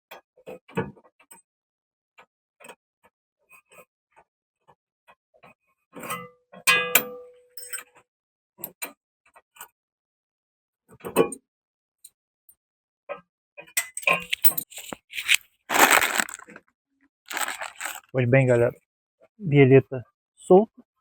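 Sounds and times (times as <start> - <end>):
hand tools clicking and clinking: 14.0 - 16.5, 17.3 - 18.6.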